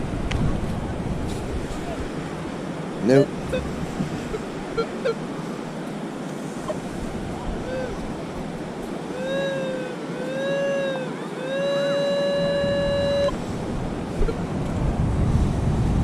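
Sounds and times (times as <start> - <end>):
wind: 0.0 - 16.0
metal detector tone: 3.0 - 5.2, 9.2 - 13.4.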